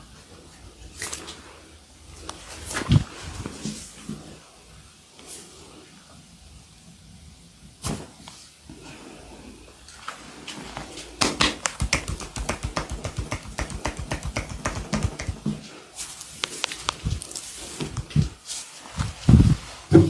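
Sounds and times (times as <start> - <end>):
rhythmic hand tapping on body: 11.2 - 15.6, 16.4 - 18.4.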